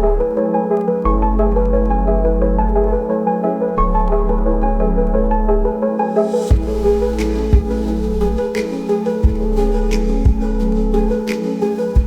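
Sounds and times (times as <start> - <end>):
lofi instrumental music: 0.0 - 12.0
soft kick drum: 6.5 - 6.8, 7.6 - 7.8, 9.2 - 9.6, 10.2 - 10.6.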